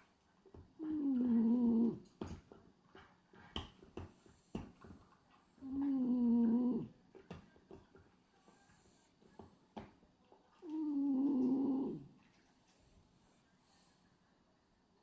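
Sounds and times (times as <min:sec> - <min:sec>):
dog snoring: 0:00.8 - 0:02.1, 0:05.6 - 0:07.0, 0:10.6 - 0:12.1.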